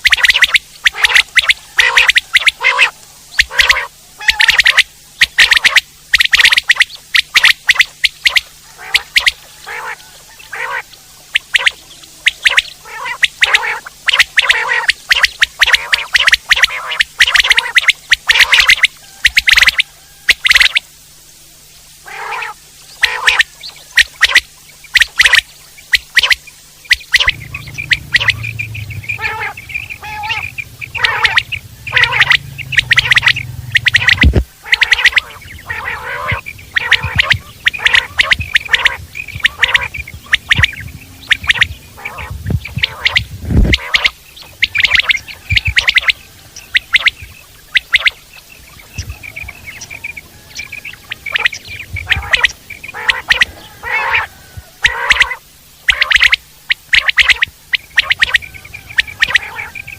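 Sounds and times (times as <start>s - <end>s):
quail calling: 0.0s - 59.9s
low rumble: 26.6s - 53.7s.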